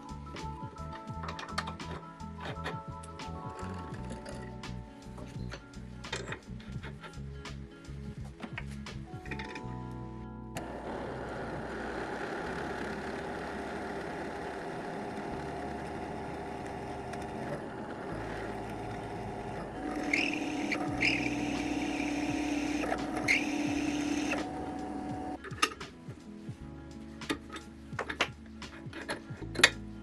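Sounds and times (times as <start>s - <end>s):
drill press motor running: 10.6s - 25.4s.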